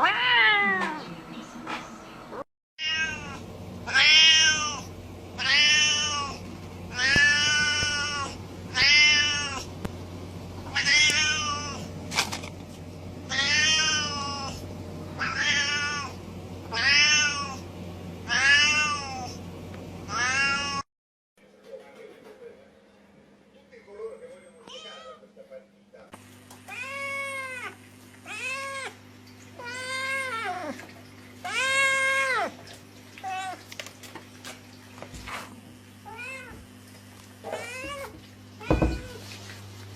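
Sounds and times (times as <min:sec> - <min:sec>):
cat yowling: 0:00.0 - 0:01.0, 0:02.8 - 0:09.7, 0:10.7 - 0:11.9, 0:13.3 - 0:14.6, 0:15.2 - 0:17.6, 0:18.3 - 0:19.4, 0:20.1 - 0:20.8, 0:26.7 - 0:29.0, 0:29.6 - 0:30.8, 0:31.4 - 0:32.6, 0:36.0 - 0:36.7, 0:37.4 - 0:39.3.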